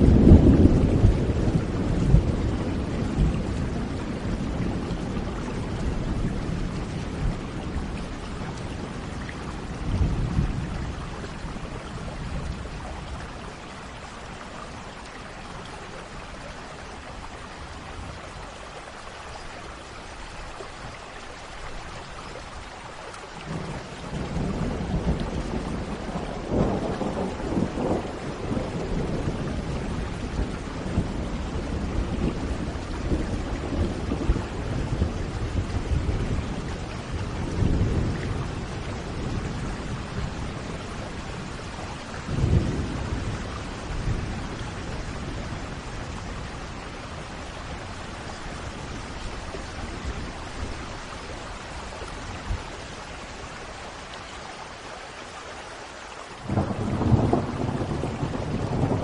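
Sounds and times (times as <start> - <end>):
rolling thunder: 0.0 - 13.4, 23.5 - 51.3, 56.4 - 59.0
steady rain: 0.0 - 59.0.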